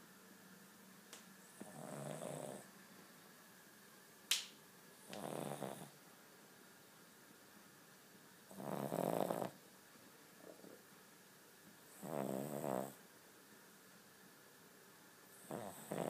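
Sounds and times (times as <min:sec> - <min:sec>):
dog snoring: 0:01.5 - 0:02.7, 0:05.0 - 0:06.0, 0:08.5 - 0:09.6, 0:11.9 - 0:13.0, 0:15.3 - 0:16.0.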